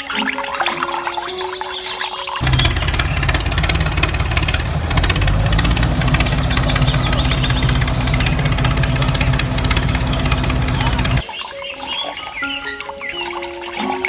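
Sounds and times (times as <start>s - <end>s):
tractor engine idling with knocking: 2.4s - 11.2s.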